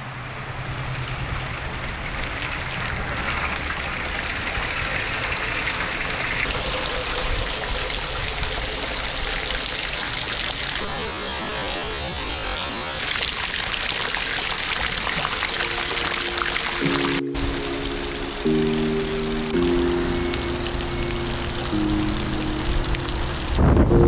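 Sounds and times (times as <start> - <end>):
water streaming and trickling: 0.0 - 23.6
heavy rain pouring: 0.0 - 24.0.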